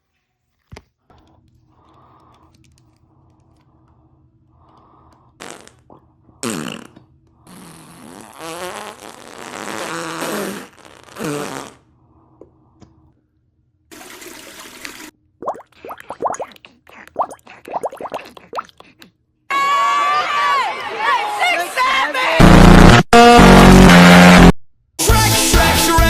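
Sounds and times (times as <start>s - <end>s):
fart noises: 5.4s - 11.9s.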